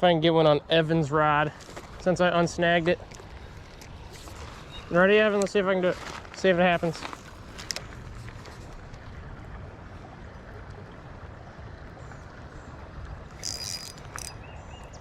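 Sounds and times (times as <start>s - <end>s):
creek water flowing: 0.0s - 15.0s.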